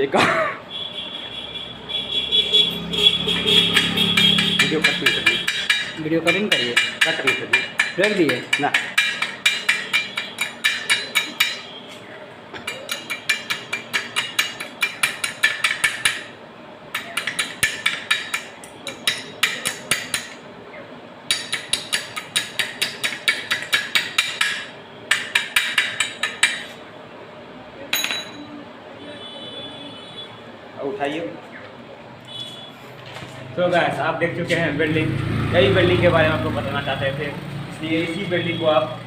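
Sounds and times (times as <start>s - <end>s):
hammer tapping on steel: 3.2s - 11.7s, 12.5s - 16.3s, 16.9s - 20.4s, 21.3s - 26.8s.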